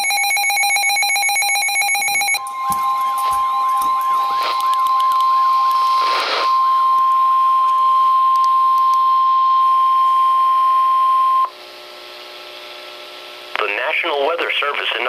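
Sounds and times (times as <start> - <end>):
high warning alarm beep: 0.0 - 11.5
static burst: 4.1 - 7.3.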